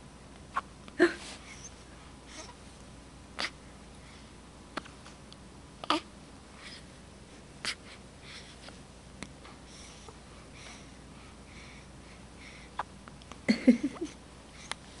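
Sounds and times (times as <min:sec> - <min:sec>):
baby breathing softly: 0:06.5 - 0:12.8, 0:14.5 - 0:15.0.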